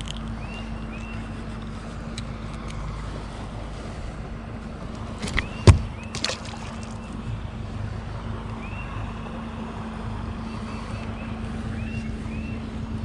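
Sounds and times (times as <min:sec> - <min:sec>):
boat motor running: 0:04.8 - 0:08.0.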